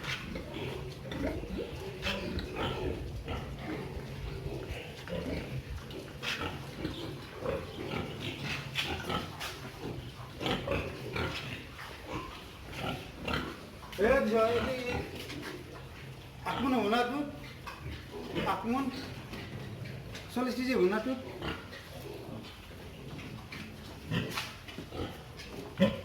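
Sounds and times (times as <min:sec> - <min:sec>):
pigs grunting: 0:00.0 - 0:26.0.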